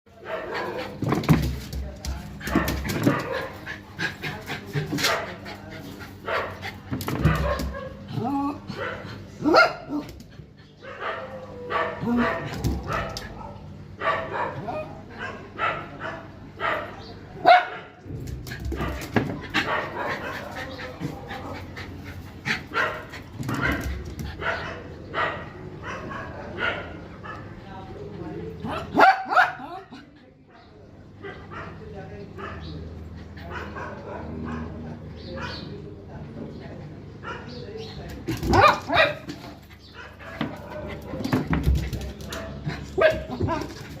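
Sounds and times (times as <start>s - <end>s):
dog barking: 0.2s - 0.9s, 2.5s - 3.6s, 6.3s - 6.6s, 7.3s - 8.0s, 8.8s - 10.0s, 10.8s - 18.0s, 22.7s - 23.8s, 24.4s - 27.4s, 28.7s - 29.8s, 37.2s - 37.6s, 38.5s - 39.4s.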